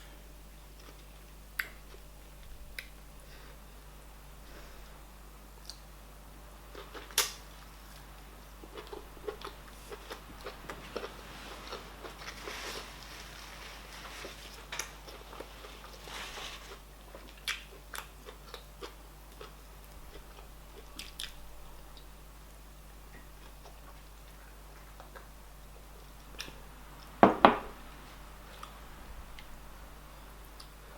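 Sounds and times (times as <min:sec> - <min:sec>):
chewing food: 0:06.7 - 0:22.1, 0:23.1 - 0:25.4, 0:28.5 - 0:29.6.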